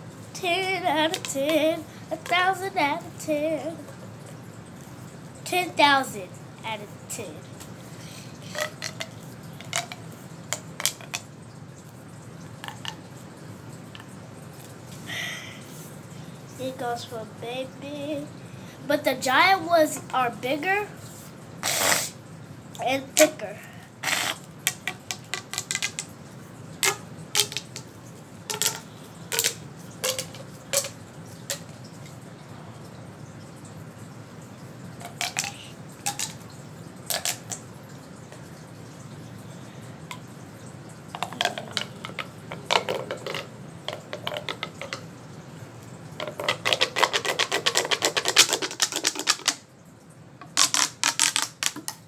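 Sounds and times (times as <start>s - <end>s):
plastic fidget toy clicking: 0.4s - 3.8s, 8.4s - 11.3s, 12.6s - 13.0s, 22.8s - 26.2s, 26.8s - 27.9s, 28.5s - 32.2s, 35.0s - 36.4s, 37.1s - 37.6s, 41.2s - 45.0s, 46.2s - 49.6s, 50.5s - 52.0s.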